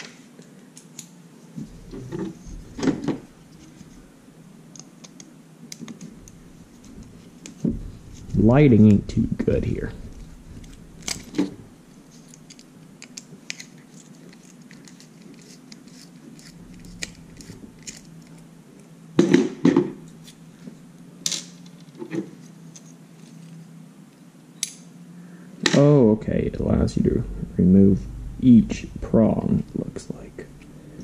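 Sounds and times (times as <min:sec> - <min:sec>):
faint low hum: 0:00.0 - 0:31.0
screwdriver and small parts clicking: 0:12.2 - 0:18.4.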